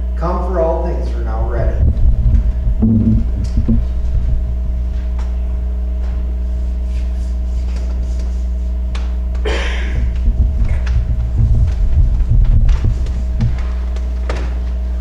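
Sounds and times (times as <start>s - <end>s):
low electrical hum: 0.0s - 15.0s
faint knocks: 1.8s - 4.5s.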